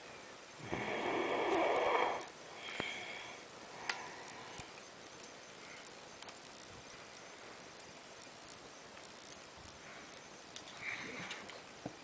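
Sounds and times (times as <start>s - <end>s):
soft breath: 0.1s - 4.8s
person snoring: 0.6s - 3.3s
faint clicks: 3.8s - 12.0s.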